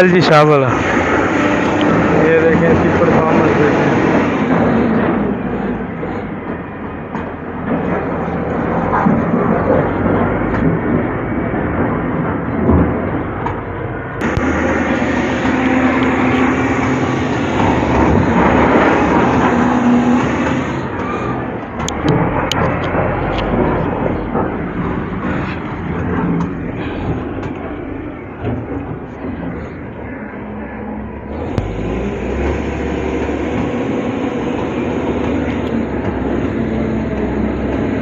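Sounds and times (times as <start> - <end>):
diesel engine under load: 0.0 - 38.0.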